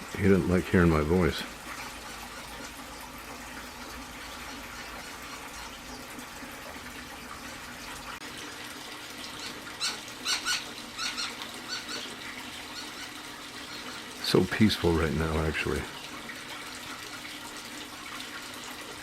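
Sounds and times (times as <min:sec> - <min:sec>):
fountain trickling: 0:00.0 - 0:19.0.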